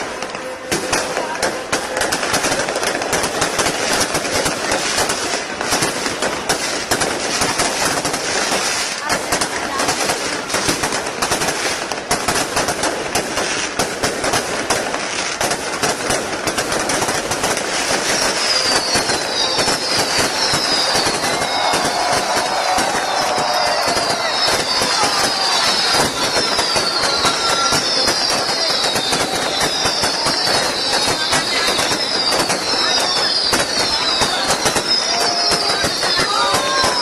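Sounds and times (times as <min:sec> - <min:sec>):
fireworks crackling: 0:00.0 - 0:37.0
falling firework whistles: 0:14.2 - 0:37.0.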